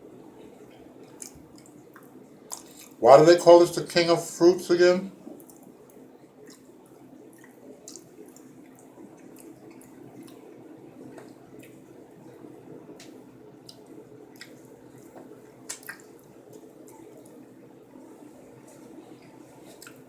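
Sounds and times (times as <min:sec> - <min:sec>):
steady low hum: 0:00.0 - 0:20.0
wet chewing mouth sounds: 0:01.0 - 0:03.0, 0:05.3 - 0:11.9, 0:13.0 - 0:17.4, 0:18.6 - 0:20.0.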